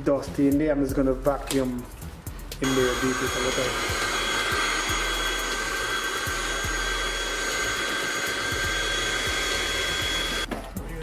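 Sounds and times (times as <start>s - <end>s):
small vacuum cleaner whining: 2.6s - 10.5s.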